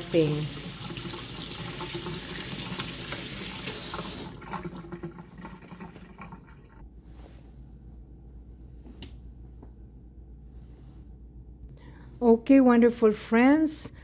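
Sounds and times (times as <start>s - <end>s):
tap water running: 0.0s - 6.8s.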